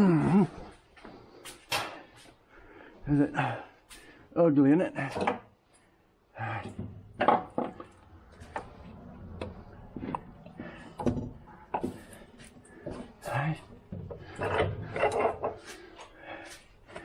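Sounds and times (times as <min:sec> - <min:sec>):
metal parts knocking and clunking: 0:05.0 - 0:05.5, 0:06.6 - 0:15.8.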